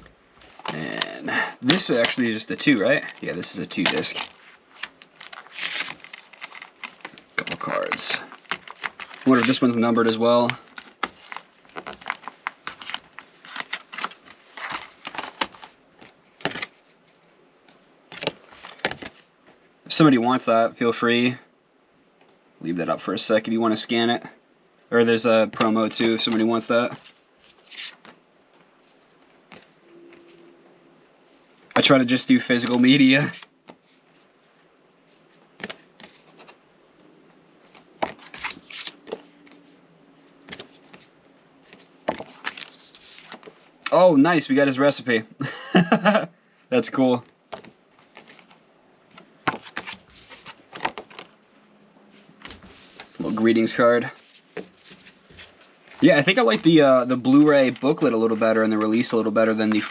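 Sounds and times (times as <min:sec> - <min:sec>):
cardboard packaging rustling: 0:00.0 - 0:17.0, 0:18.1 - 0:19.3, 0:37.6 - 0:39.7, 0:40.4 - 0:43.8, 0:47.5 - 0:51.4, 0:52.1 - 0:59.9.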